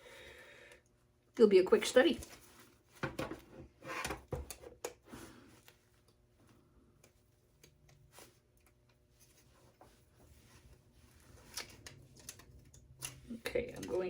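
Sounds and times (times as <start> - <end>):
small parts ticking and scraping: 11.4 - 14.0.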